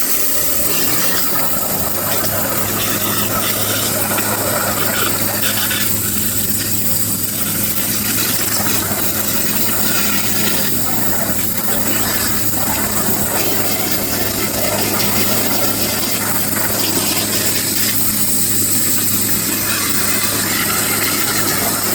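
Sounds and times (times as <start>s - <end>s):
high-pressure water jet hiss: 0.0s - 21.9s.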